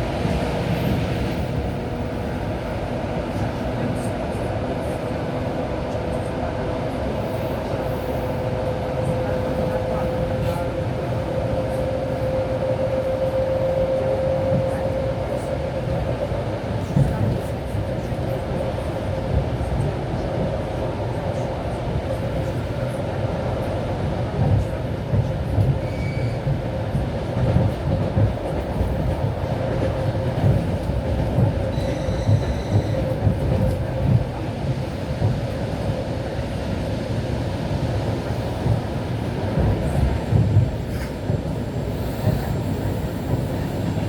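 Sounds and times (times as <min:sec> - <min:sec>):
train rumbling: 0:00.0 - 0:44.0
faint high squeals: 0:25.8 - 0:26.4, 0:31.7 - 0:33.0.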